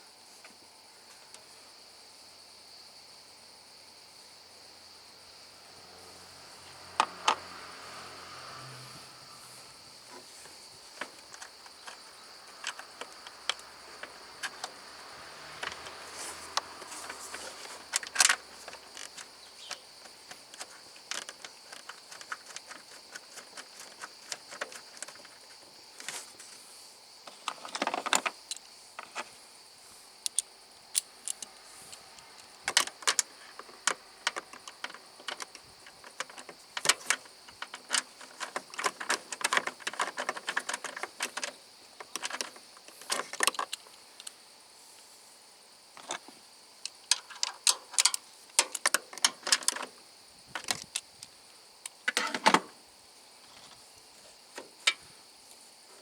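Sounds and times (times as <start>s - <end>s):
insect chirring: 0.8s - 56.0s
rustling: 8.9s - 30.1s, 31.2s - 44.3s.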